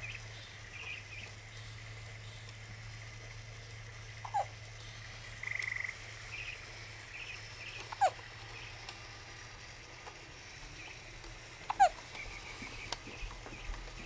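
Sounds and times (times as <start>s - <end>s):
buzzing rattle: 0.0s - 14.0s
faint chirps: 0.0s - 14.0s
baby hiccupping: 4.2s - 4.5s, 11.7s - 12.0s.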